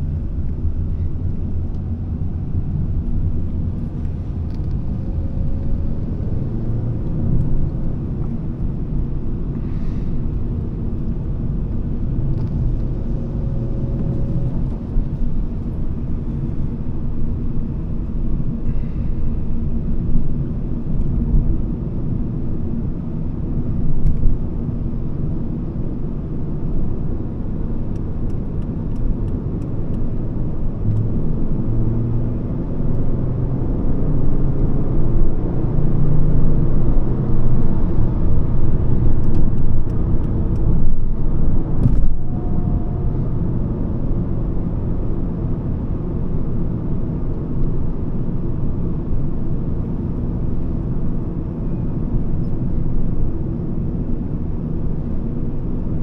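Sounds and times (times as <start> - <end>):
car engine running: 0.0 - 26.2
road and tyre noise in car: 0.0 - 56.0.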